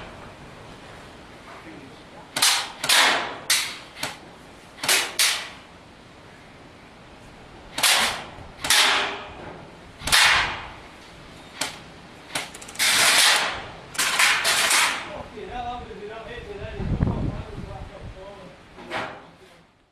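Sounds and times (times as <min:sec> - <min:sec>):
airsoft gun sharp cracks: 0:02.4 - 0:04.2, 0:04.8 - 0:05.6, 0:07.7 - 0:09.2, 0:10.1 - 0:10.7, 0:11.6 - 0:15.0.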